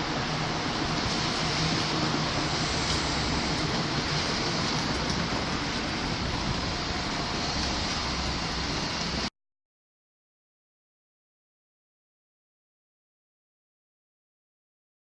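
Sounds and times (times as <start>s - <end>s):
train wheels on rails: 0.0s - 9.3s.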